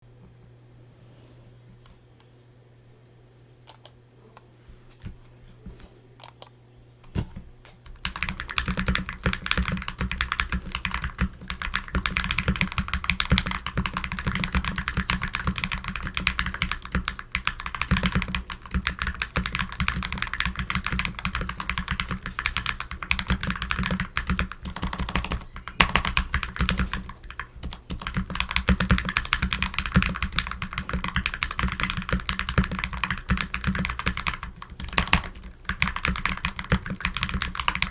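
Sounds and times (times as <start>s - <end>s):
mechanical keyboard typing: 7.9s - 37.9s.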